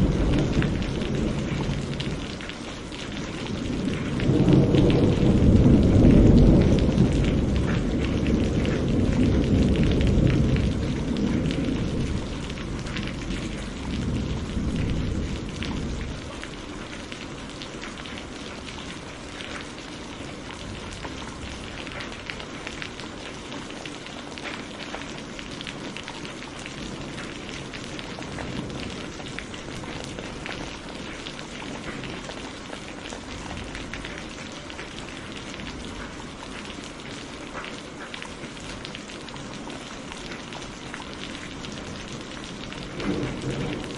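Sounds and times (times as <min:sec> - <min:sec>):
rolling thunder: 0:00.0 - 0:16.7, 0:26.6 - 0:32.3, 0:41.4 - 0:43.9
rain pattering: 0:00.0 - 0:43.9.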